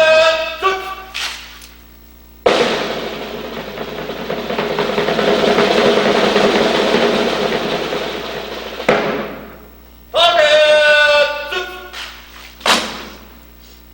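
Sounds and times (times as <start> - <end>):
drum roll: 2.5 - 9.8.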